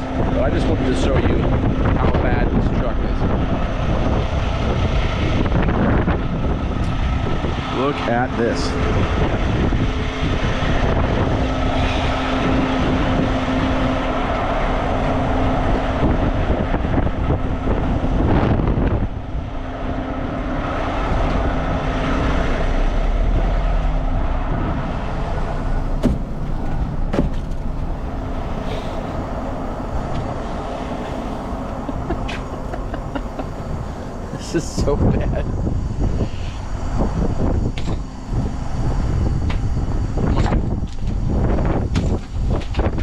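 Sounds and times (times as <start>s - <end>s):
wind buffeting microphone: 0.0s - 43.0s
truck engine humming: 6.2s - 35.0s.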